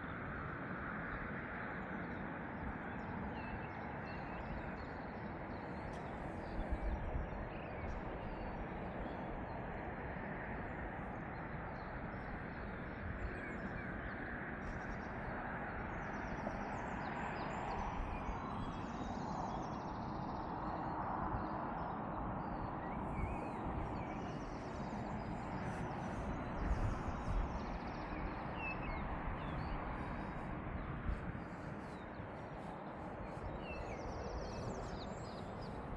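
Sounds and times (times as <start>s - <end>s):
outdoor background noise: 0.0s - 35.9s.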